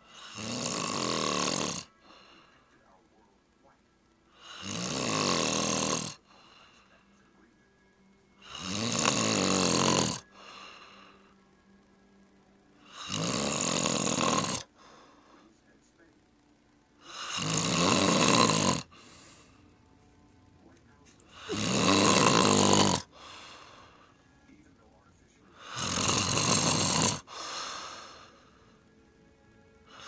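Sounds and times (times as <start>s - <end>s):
person snoring: 0.0s - 2.7s, 4.3s - 7.0s, 8.4s - 11.4s, 12.8s - 15.5s, 17.0s - 19.6s, 21.3s - 24.2s, 25.5s - 28.8s
faint breathing: 1.8s - 3.1s, 6.2s - 7.4s, 10.2s - 11.6s, 14.6s - 15.8s, 18.9s - 19.8s, 23.0s - 24.6s, 25.4s - 26.1s, 27.2s - 29.0s.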